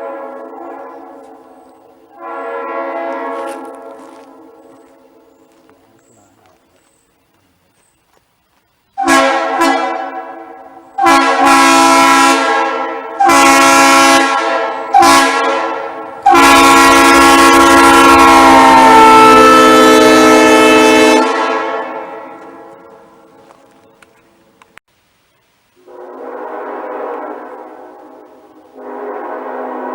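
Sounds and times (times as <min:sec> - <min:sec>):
train air horn blasts: 0:00.0 - 0:05.3, 0:09.0 - 0:23.3, 0:25.8 - 0:29.9.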